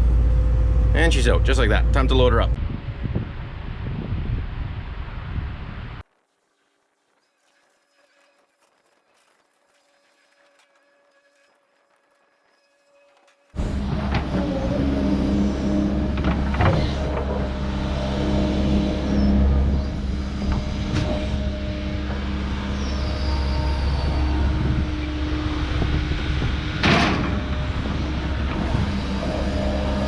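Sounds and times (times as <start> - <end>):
earthmoving machine engine running: 11.8 - 30.0.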